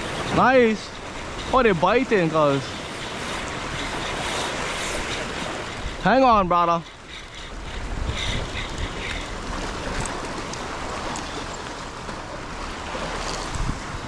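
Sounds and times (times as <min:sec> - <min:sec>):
wind on microphone: 0:00.0 - 0:11.6, 0:12.6 - 0:14.0
ocean surf washing: 0:00.0 - 0:14.0.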